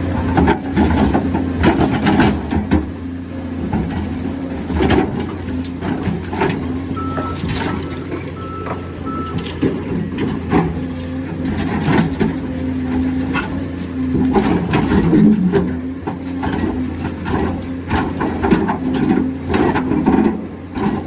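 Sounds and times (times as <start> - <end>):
excavator diesel engine: 0.0 - 21.0
beeping alarm: 7.0 - 9.5.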